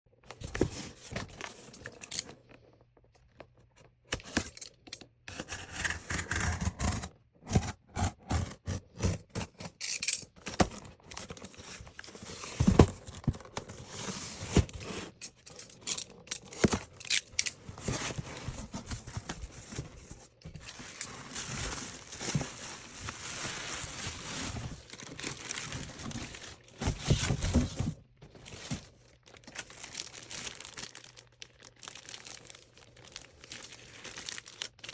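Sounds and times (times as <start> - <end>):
packaging rustling and tearing: 10.4 - 34.9.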